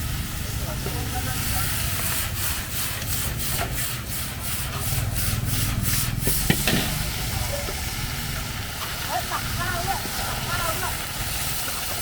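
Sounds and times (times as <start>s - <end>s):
metal spatula scraping wok: 1.4s - 7.1s.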